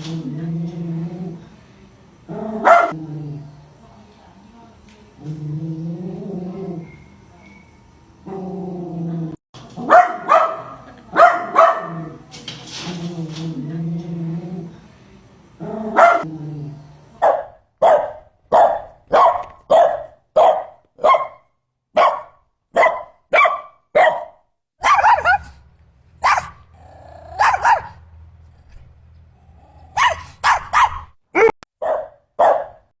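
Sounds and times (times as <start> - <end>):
dog barking: 2.6 - 3.0, 9.8 - 12.2, 15.9 - 16.3, 17.2 - 25.6, 26.2 - 28.0, 29.9 - 32.9
faint low hum: 24.8 - 30.8.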